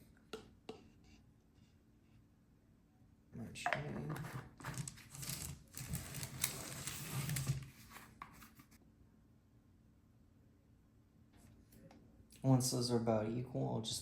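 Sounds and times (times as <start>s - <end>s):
plastic containers rustling and scraping: 3.7s - 8.8s.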